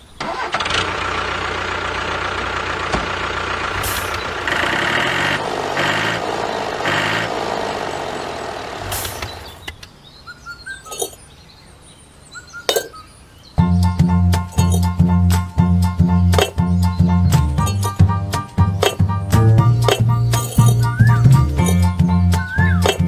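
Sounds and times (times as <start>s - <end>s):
small motor running: 3.2s - 9.6s
bird chirps: 7.9s - 13.8s, 16.3s - 18.0s, 19.8s - 23.0s.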